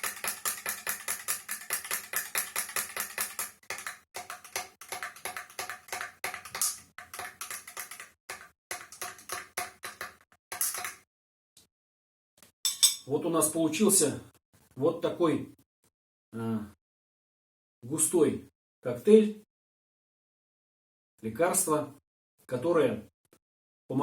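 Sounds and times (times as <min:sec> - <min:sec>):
metal spoon clinking in glass: 0:00.0 - 0:04.4, 0:06.5 - 0:11.0, 0:12.7 - 0:13.1.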